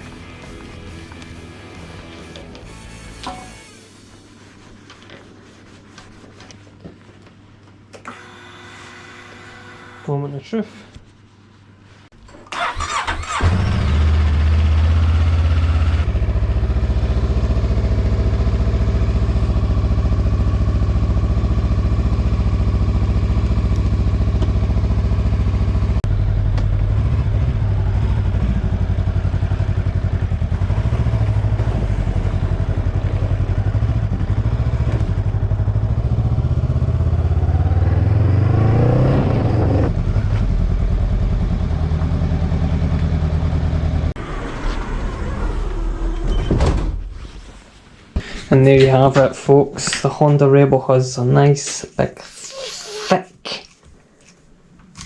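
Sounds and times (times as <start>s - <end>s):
motorcycle engine starting and idling: 12.3s - 47.1s.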